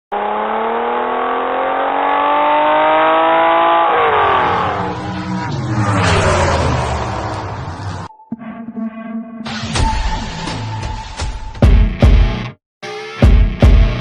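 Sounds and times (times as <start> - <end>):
vehicle engine accelerating: 0.1 - 8.2.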